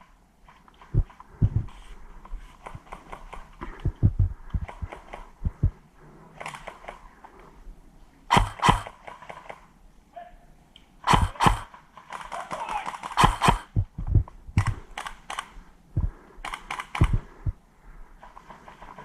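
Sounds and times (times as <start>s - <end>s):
airsoft gun firing: 8.3s - 9.6s, 11.1s - 13.8s.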